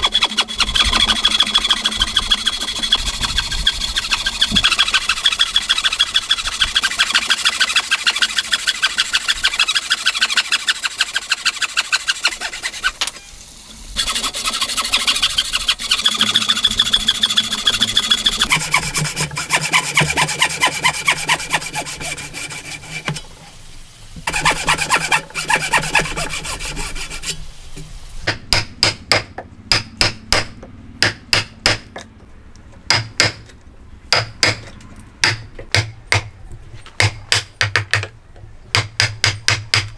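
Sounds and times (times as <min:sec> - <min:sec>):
hand saw cutting wood: 0:00.0 - 0:13.2, 0:14.0 - 0:23.3, 0:24.2 - 0:27.4.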